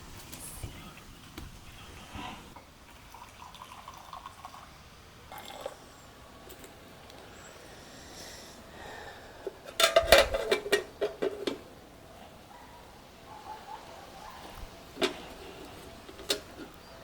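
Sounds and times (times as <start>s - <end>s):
cookware clattering: 9.7s - 11.6s.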